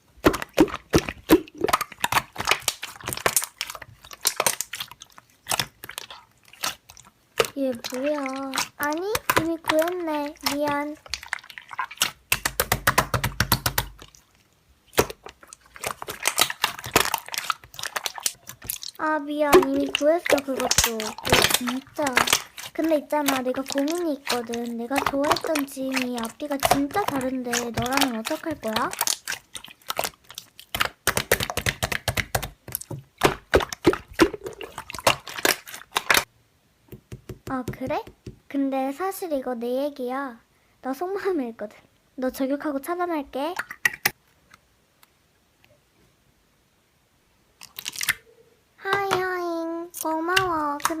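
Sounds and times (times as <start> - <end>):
slime squishing with wet pops: 0.1 - 36.3, 43.5 - 44.2, 47.6 - 51.0.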